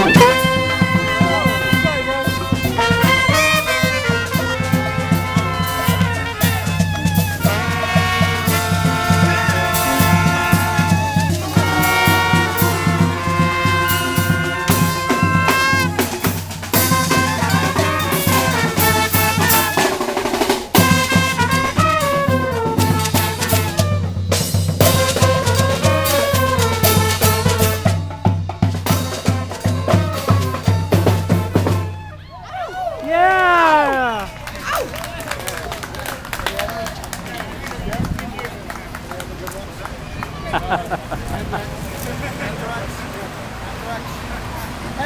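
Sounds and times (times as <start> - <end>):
drum beat: 0.0 - 32.1
trumpets and trombones: 0.0 - 32.2.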